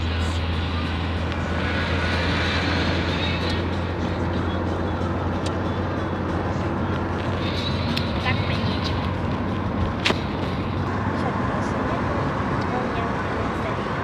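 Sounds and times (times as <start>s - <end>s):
tyres hissing on road: 0.0s - 4.3s
car engine drone: 0.0s - 14.0s.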